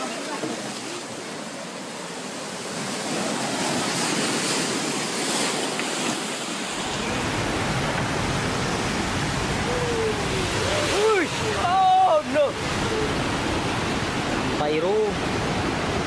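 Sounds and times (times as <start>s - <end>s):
fast water rushing: 0.0s - 16.0s.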